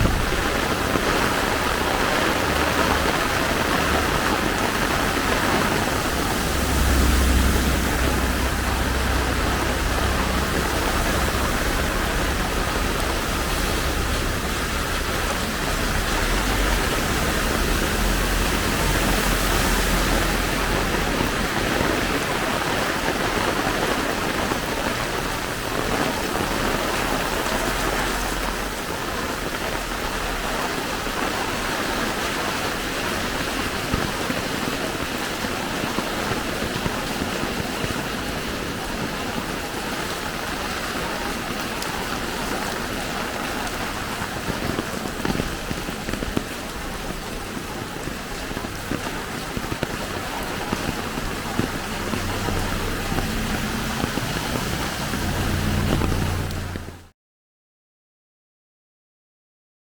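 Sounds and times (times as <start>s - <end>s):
low rumble: 0.0s - 21.6s, 50.0s - 57.1s
heavy rain falling: 0.0s - 57.1s.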